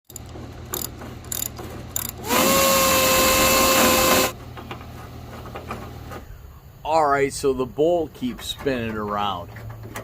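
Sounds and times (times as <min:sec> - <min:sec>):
power tool whining: 0:00.1 - 0:04.4.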